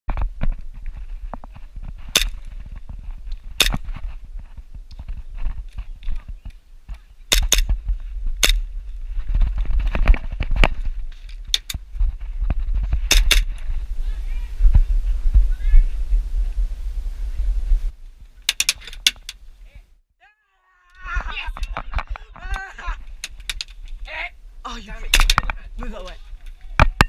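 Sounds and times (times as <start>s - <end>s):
low rumble: 7.7s - 18.4s.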